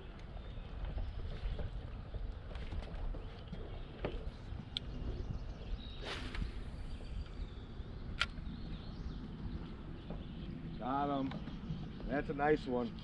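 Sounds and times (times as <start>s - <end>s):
wind rumble on microphone: 0.0s - 13.0s
short hissing rush: 6.0s - 6.9s.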